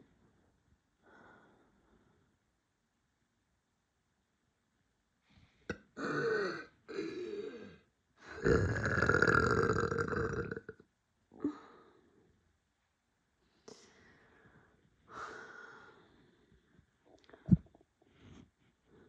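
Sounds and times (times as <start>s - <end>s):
person burping: 5.7s - 7.6s, 8.3s - 10.8s.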